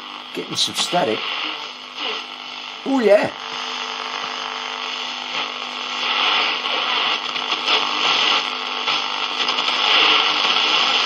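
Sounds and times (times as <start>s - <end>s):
radio static hissing: 0.0s - 11.0s.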